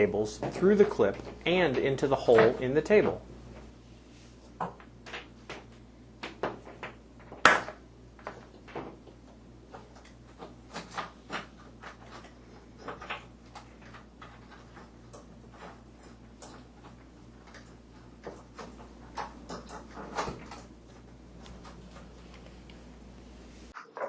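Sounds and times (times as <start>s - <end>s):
steady low hum: 0.0s - 23.8s.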